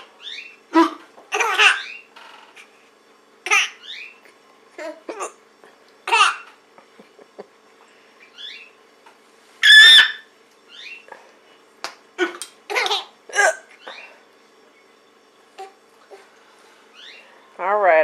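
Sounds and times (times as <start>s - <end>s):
woman hiccuping: 0.7s - 1.1s, 12.2s - 12.4s, 13.3s - 13.7s.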